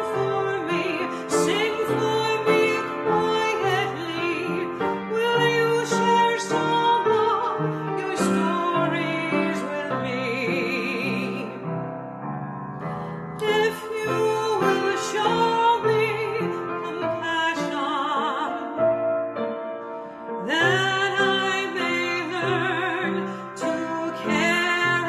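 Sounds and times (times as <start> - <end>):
person singing with vibrato: 0.0 - 11.8, 13.3 - 19.1, 20.4 - 25.0
piano accompaniment: 0.0 - 25.0.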